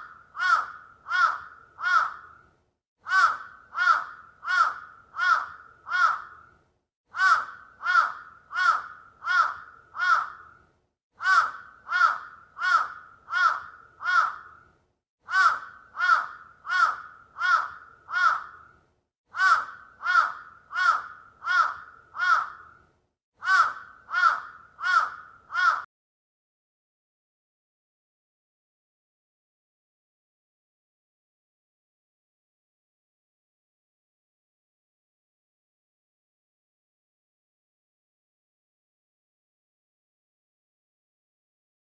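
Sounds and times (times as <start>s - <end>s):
crow cawing: 0.0s - 2.4s, 3.0s - 6.5s, 7.1s - 10.6s, 11.2s - 14.7s, 15.3s - 22.8s, 23.4s - 25.9s.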